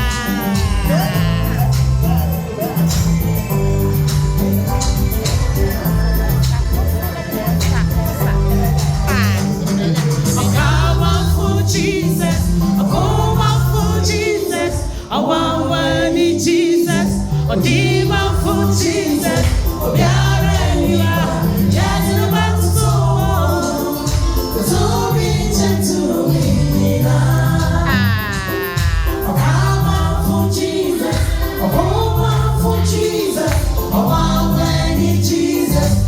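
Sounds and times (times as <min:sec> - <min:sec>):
band with steady bass line: 0:00.0 - 0:36.0
choir singing: 0:10.3 - 0:36.0.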